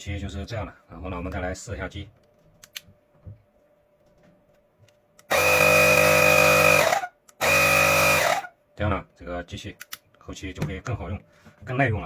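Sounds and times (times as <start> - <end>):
air compressor buzzing drone: 5.3 - 8.5.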